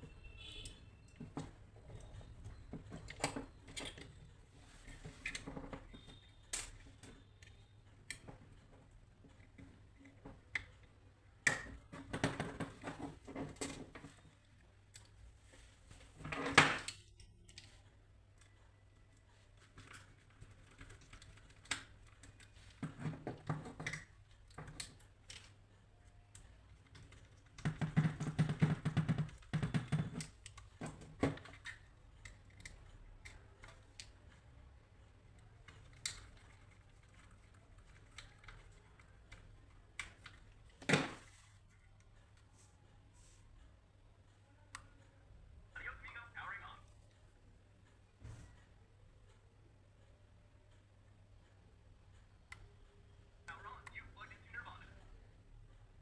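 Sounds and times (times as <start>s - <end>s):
light clicks and taps of small parts: 16.8s - 27.8s.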